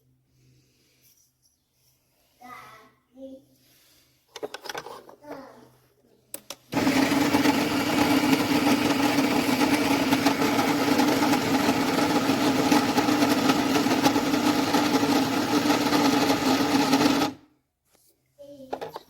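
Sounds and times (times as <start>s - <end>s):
coffee grinder motor humming: 6.7s - 17.4s.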